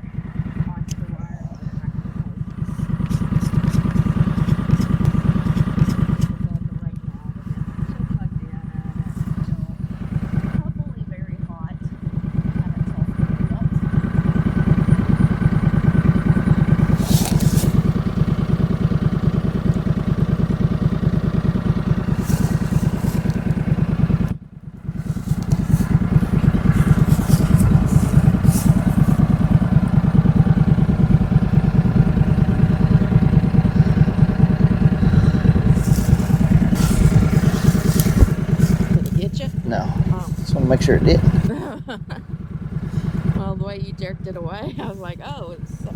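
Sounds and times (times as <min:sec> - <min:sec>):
farm vehicle engine running: 0:00.0 - 0:45.9
light clatters and scrapes: 0:02.5 - 0:06.4, 0:16.9 - 0:18.0, 0:22.2 - 0:23.6, 0:25.0 - 0:29.2, 0:35.6 - 0:39.3.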